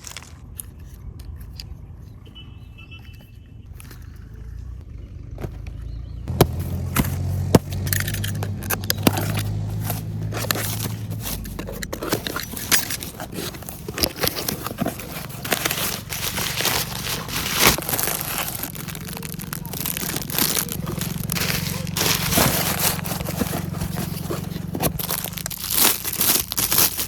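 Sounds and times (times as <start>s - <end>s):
packaging crinkling: 6.3s - 27.0s.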